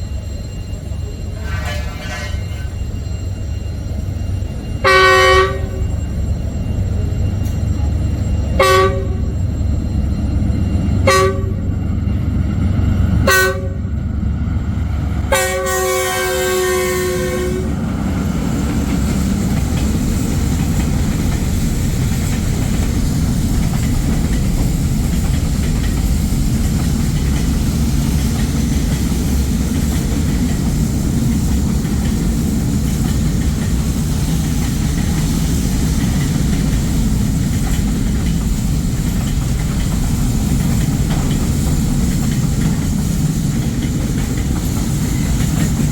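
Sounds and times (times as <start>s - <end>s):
train rumbling over track: 0.0s - 45.9s
diesel locomotive horn: 1.4s - 2.8s, 4.8s - 5.8s, 8.6s - 9.3s, 11.0s - 11.7s, 13.2s - 14.0s, 15.2s - 17.9s.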